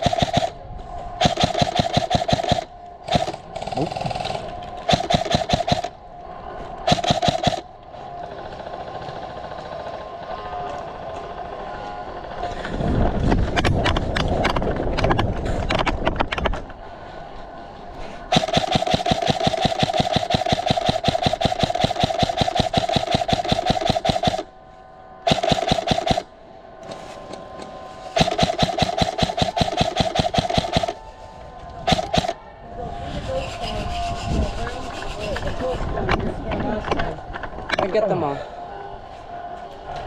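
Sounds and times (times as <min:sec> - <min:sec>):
airsoft gun firing full auto: 0:00.0 - 0:00.6, 0:01.2 - 0:06.0, 0:06.8 - 0:07.7, 0:18.3 - 0:24.5, 0:25.2 - 0:26.3, 0:28.2 - 0:31.0, 0:31.8 - 0:32.4.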